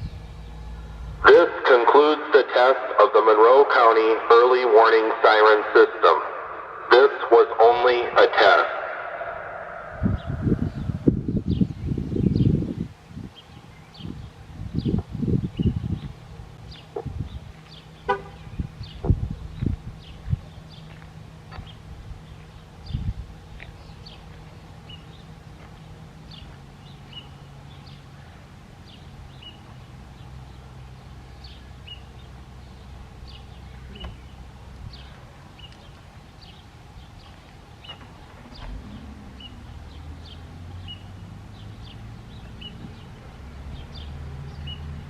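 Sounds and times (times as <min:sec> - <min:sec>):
low steady hum: 0:00.0 - 0:03.3
small birds chirping: 0:09.8 - 0:45.0.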